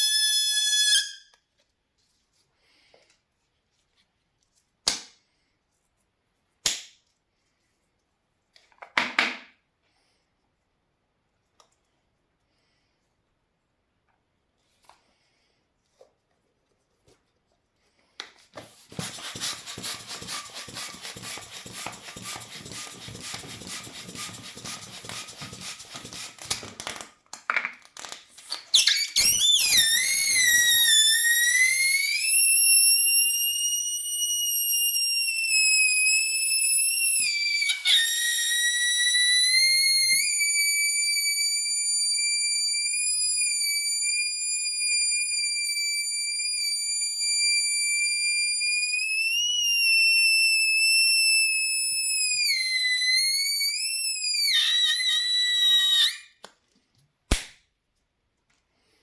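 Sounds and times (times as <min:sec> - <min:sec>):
balloon squealing: 0:00.0 - 0:01.3, 0:28.3 - 0:56.4.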